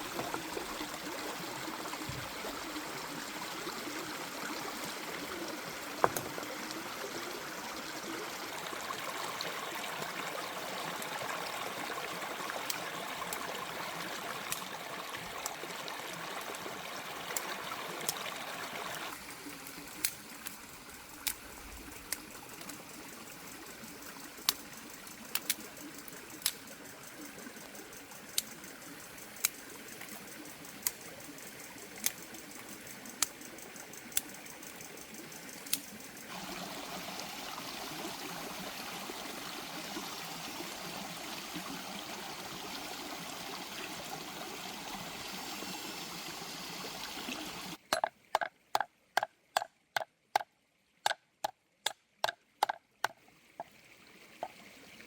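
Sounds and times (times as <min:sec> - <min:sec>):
water rushing: 0:00.0 - 0:19.4, 0:36.3 - 0:47.8.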